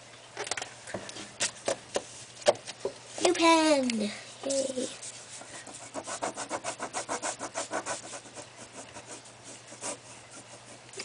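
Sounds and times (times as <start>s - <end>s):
marker scribbling on paper: 4.5s - 11.0s.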